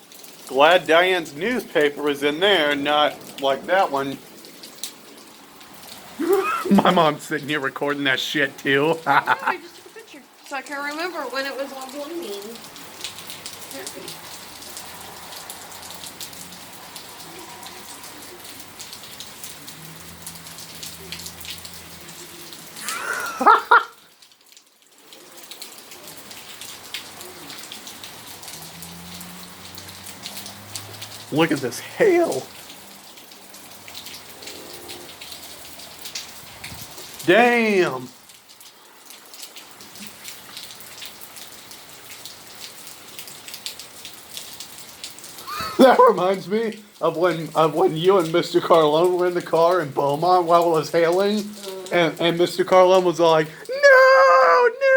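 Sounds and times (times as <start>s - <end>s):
hailstones ticking: 0.0s - 54.4s
hail and rain falling: 0.0s - 54.9s.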